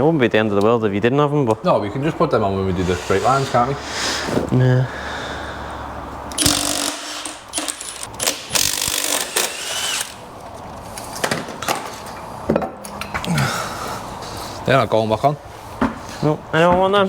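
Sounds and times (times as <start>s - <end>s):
power tool running: 6.3s - 10.3s.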